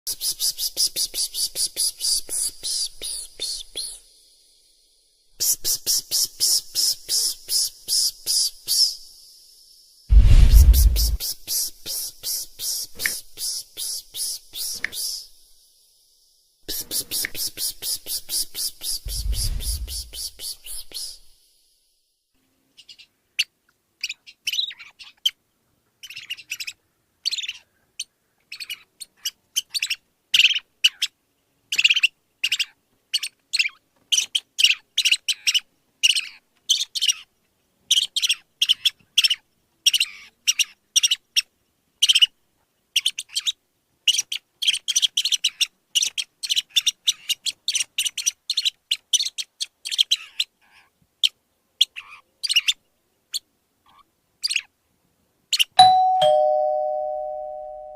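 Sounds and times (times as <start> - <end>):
small bird chirping: 0.1 - 10.1, 16.7 - 21.6, 28.5 - 31.1, 43.0 - 54.7.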